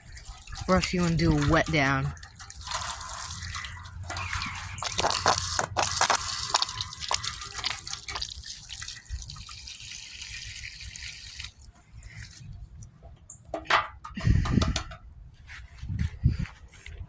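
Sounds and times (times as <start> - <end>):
water splashing on plastic dish: 0.0 - 11.7.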